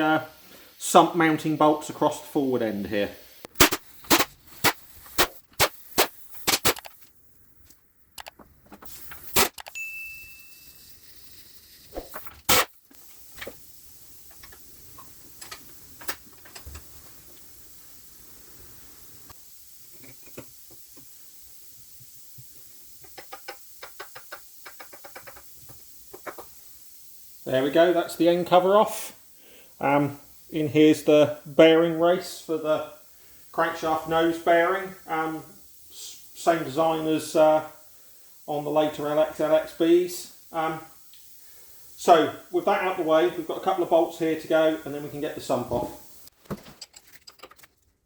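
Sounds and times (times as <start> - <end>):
faint steady high tone: 9.7 - 11.7.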